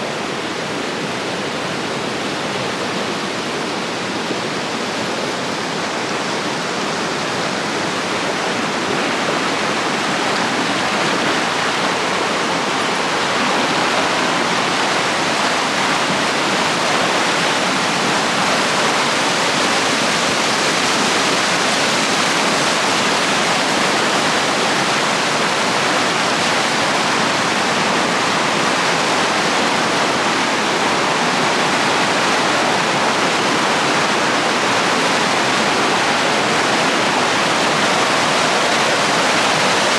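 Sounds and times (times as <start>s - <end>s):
mountain river rushing: 0.0s - 39.9s.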